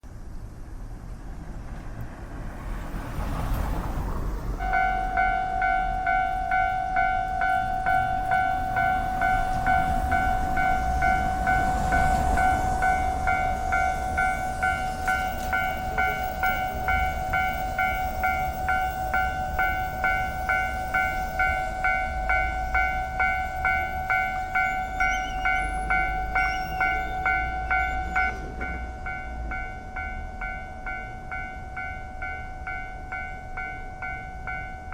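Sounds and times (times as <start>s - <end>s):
train rumbling on rails: 0.0s - 34.9s
pulsing high warning tone: 4.6s - 34.9s.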